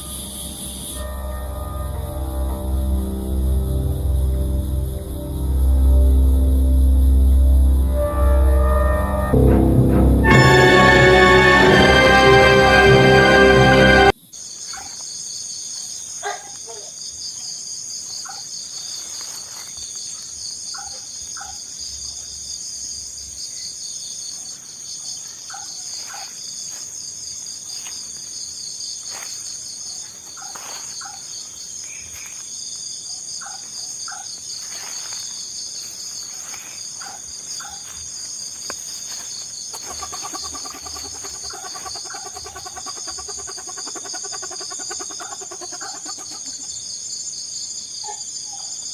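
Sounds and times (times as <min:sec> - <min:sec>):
crickets shrilling: 0:00.0 - 0:09.1, 0:14.1 - 0:48.9
animal double calls: 0:39.7 - 0:46.7
low animal call: 0:39.7 - 0:46.7.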